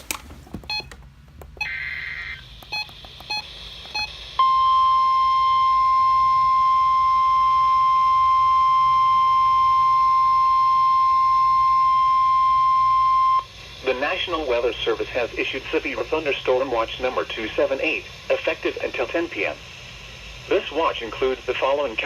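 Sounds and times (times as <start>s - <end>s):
steady warning alarm tone: 1.6s - 14.6s.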